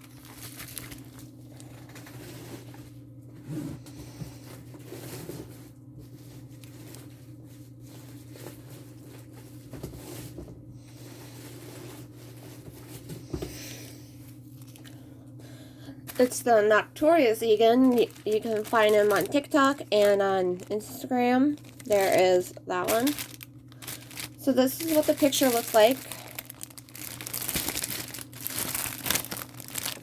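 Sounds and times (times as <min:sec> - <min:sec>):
packaging rustling and crinkling: 0:00.0 - 0:02.9, 0:04.7 - 0:10.3, 0:16.0 - 0:30.0
low steady hum: 0:00.0 - 0:30.0.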